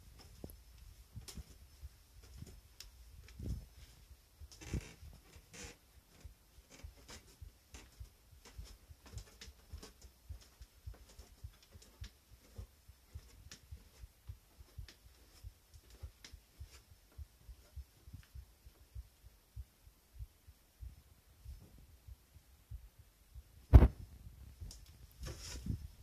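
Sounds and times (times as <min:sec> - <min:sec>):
heartbeat thumps: 0:00.0 - 0:26.0.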